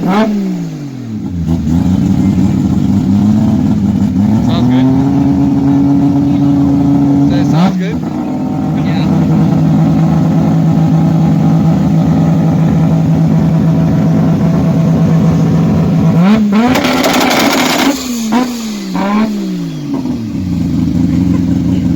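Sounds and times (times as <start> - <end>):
exhaust crackling: 0.0 - 21.9
rotary engine idling and revving: 0.0 - 21.9.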